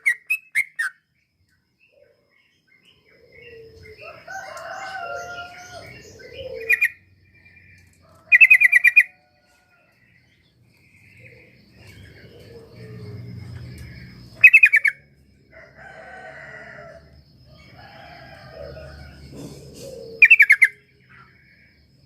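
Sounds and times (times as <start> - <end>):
bird chattering and warbling: 0.0 - 1.0, 2.8 - 9.3, 10.3 - 15.1, 19.1 - 21.4.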